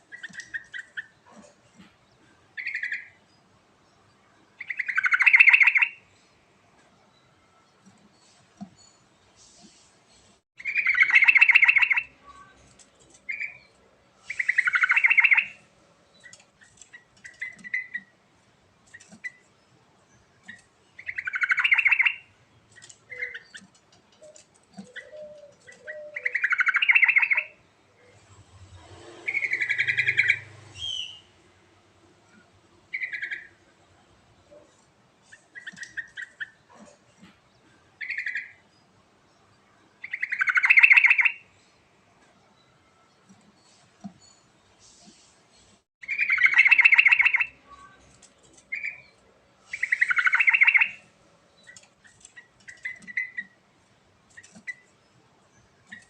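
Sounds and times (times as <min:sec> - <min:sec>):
bird singing bubbling phrases: 0:20.6 - 0:22.3, 0:24.9 - 0:27.6, 0:49.8 - 0:51.0.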